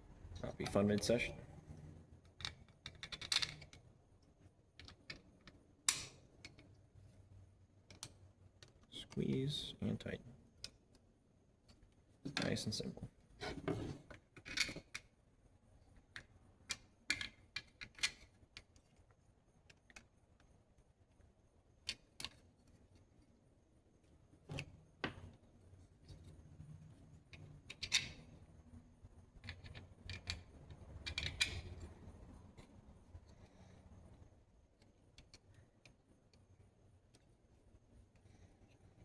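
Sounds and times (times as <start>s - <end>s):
small parts clicking and tapping: 2.1s - 9.4s, 10.6s - 11.1s, 14.0s - 15.2s, 15.9s - 23.3s, 26.0s - 39.0s.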